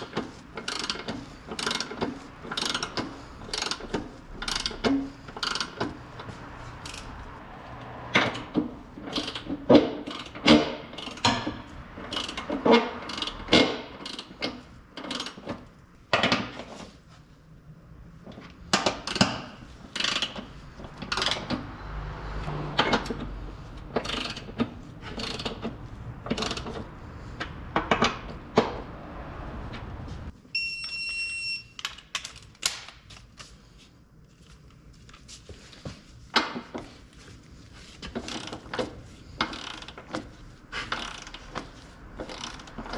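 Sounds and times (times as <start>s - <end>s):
hand tools clicking and knocking: 0.0s - 16.8s, 18.3s - 21.8s, 22.4s - 28.8s, 38.0s - 42.9s
short high electronic beep: 30.6s - 31.8s.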